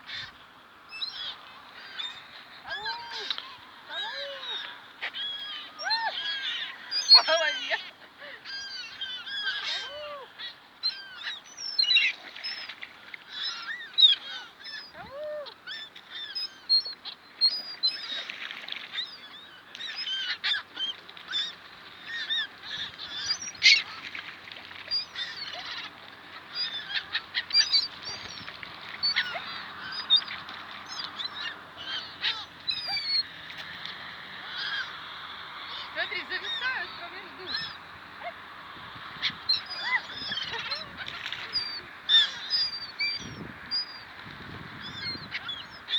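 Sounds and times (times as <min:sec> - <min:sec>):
gulls squawking: 0:01.2 - 0:10.2, 0:19.8 - 0:24.2, 0:24.9 - 0:33.6, 0:34.3 - 0:35.0, 0:35.6 - 0:45.9.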